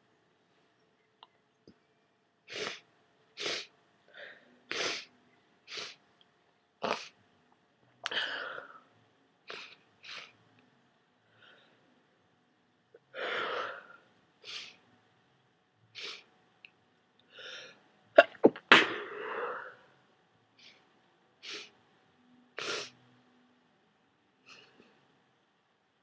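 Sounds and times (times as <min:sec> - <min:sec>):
person sneezing wetly: 0:18.2 - 0:19.2.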